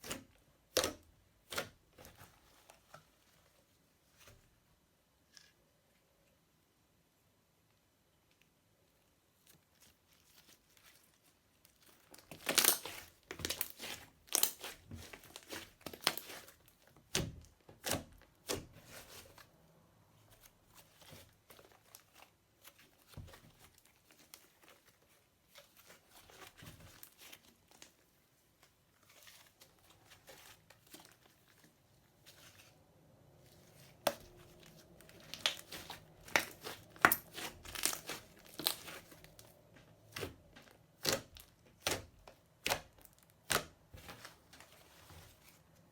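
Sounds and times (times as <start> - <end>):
slime squished by hand crackling: 11.9 - 19.2, 33.8 - 44.3.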